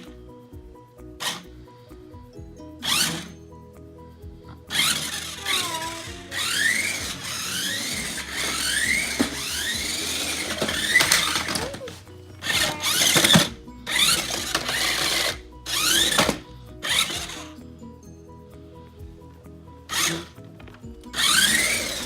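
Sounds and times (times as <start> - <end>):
toy car electric motor whining: 1.2 - 1.8, 2.8 - 3.4, 4.6 - 17.6, 19.9 - 22.0.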